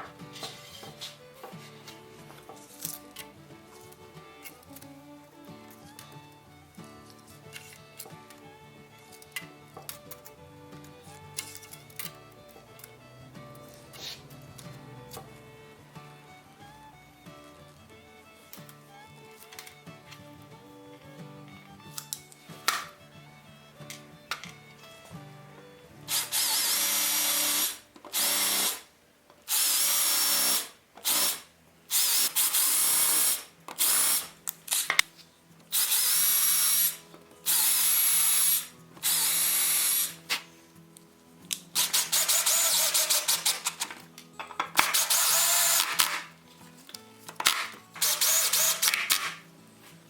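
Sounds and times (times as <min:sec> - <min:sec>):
background music: 0:00.0 - 0:28.9, 0:29.5 - 0:50.0
power tool cutting wood: 0:26.1 - 0:28.8, 0:29.5 - 0:34.9, 0:35.7 - 0:40.2, 0:41.8 - 0:43.9, 0:44.8 - 0:46.3, 0:47.5 - 0:49.4.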